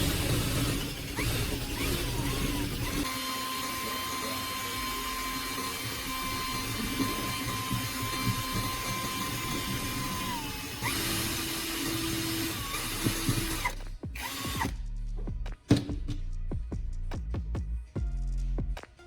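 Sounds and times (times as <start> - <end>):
power tool whining: 0.0 - 14.7.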